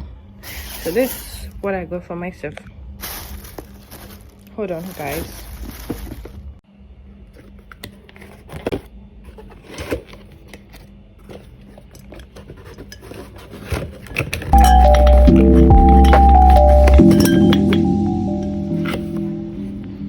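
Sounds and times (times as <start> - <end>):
small objects knocking and clinking: 14.5 - 17.9.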